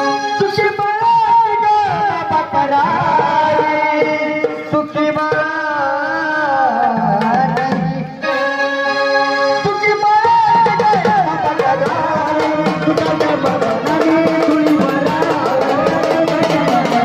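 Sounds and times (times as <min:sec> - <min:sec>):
electronic organ melody: 0:00.0 - 0:02.6, 0:08.1 - 0:17.0
drum strokes: 0:10.4 - 0:17.0.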